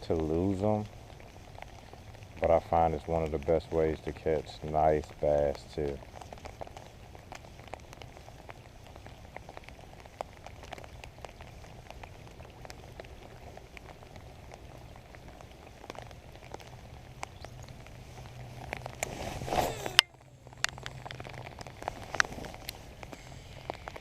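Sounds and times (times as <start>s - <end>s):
drops ticking close by: 0.0s - 19.0s, 19.9s - 24.0s
rain falling: 0.0s - 24.0s
loud rustle: 17.9s - 20.1s.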